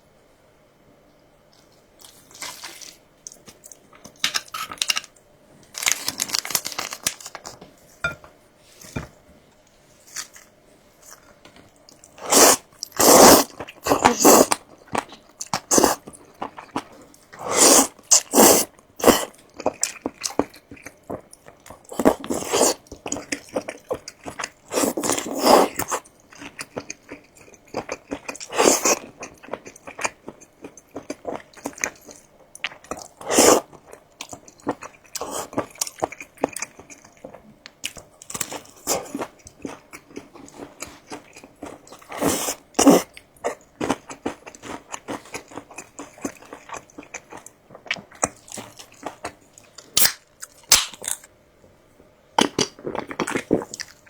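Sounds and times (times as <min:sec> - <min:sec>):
crunchy bites and chewing: 0:47.8 - 0:51.3.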